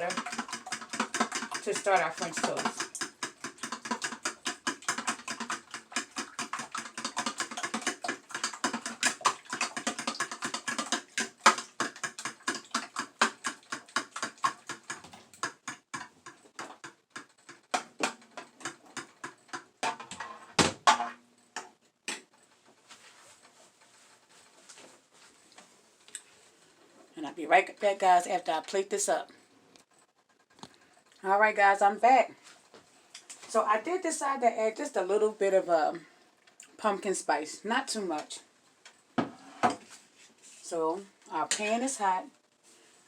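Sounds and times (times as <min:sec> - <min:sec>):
whisk clicking against bowl: 0:00.0 - 0:19.7.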